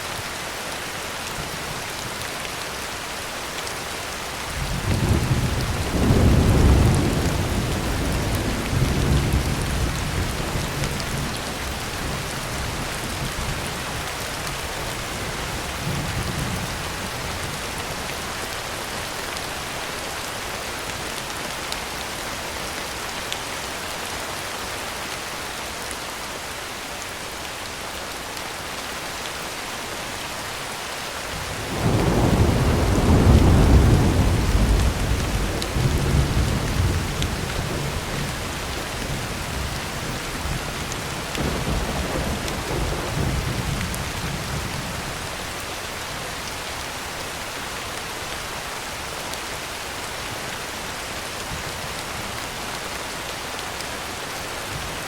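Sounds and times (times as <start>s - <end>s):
heavy rain on a tin roof: 0.0s - 55.0s
thunder rumbling: 31.6s - 45.0s.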